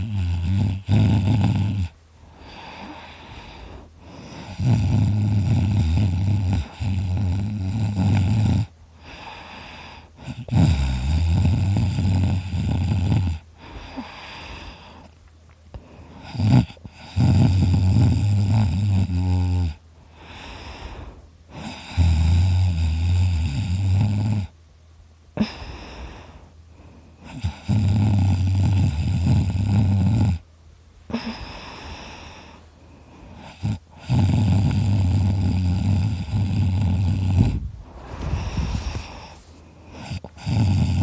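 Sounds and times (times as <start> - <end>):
quiet breathing: 0.0 - 10.6, 11.4 - 17.3, 19.7 - 23.5, 25.3 - 27.9, 30.4 - 41.0
loud snoring: 0.0 - 14.9, 16.1 - 24.6, 27.2 - 30.4, 33.3 - 41.0.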